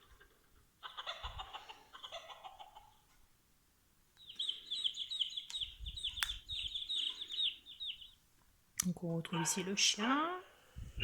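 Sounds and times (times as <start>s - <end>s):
recorded chicken clucking: 0.0s - 3.3s, 4.2s - 8.2s.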